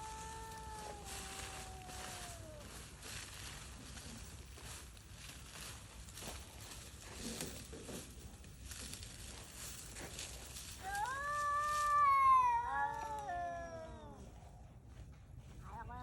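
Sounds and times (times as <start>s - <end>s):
cat yowling: 0.0s - 2.8s, 10.8s - 14.4s.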